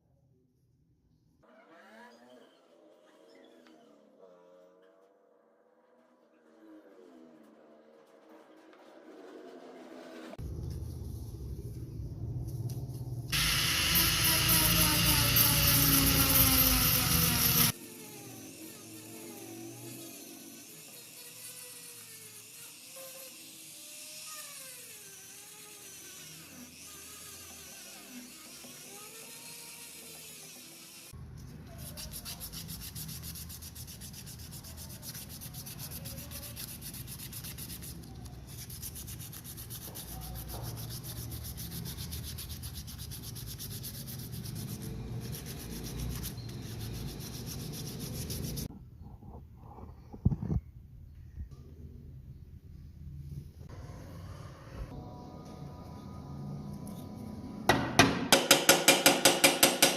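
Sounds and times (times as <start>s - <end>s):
hand sanding strokes: 26.9s - 48.7s
sharp knocks: 57.7s - 59.9s.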